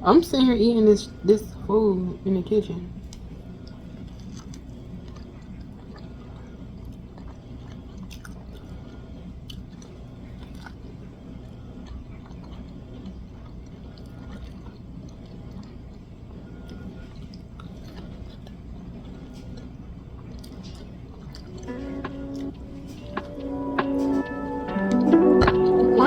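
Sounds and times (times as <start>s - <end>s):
person chewing crispy chicken: 3.1s - 23.6s.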